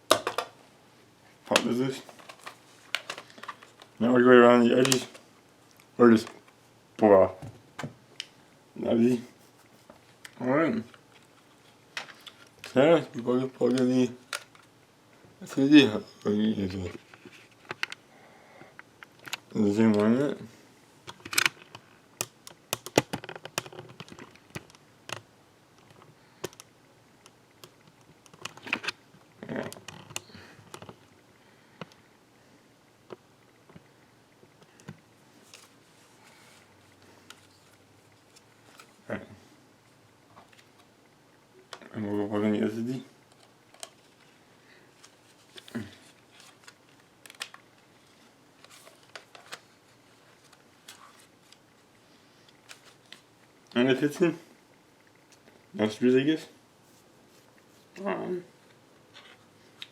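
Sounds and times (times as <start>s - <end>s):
faint clicks and taps of plastic parts: 1.5s - 4.0s, 21.1s - 29.0s, 29.6s - 31.1s, 34.5s - 35.7s, 43.3s - 44.3s
plastic laptop parts clicking: 21.1s - 25.2s, 25.8s - 29.0s, 46.4s - 47.6s.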